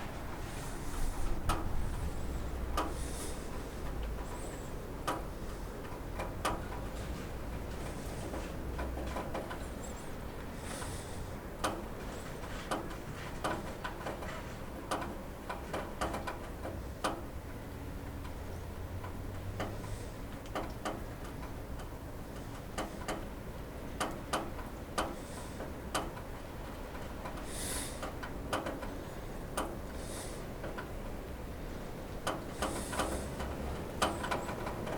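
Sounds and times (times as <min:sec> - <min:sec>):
raindrops tapping on roof: 0:19.0 - 0:34.9.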